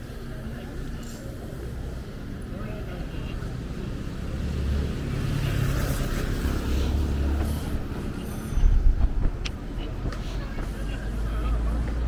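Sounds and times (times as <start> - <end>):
wind buffeting microphone: 8.6 - 10.7.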